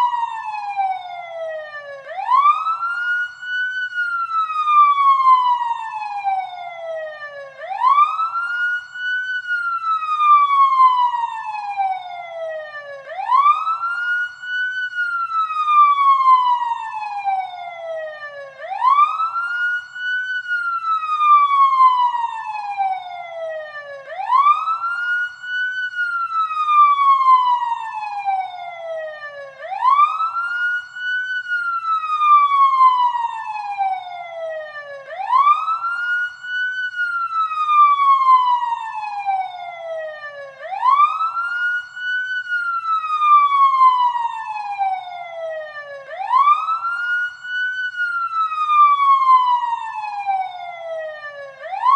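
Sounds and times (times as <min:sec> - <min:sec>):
electronic siren wailing: 0:00.0 - 0:03.3, 0:20.5 - 0:51.9.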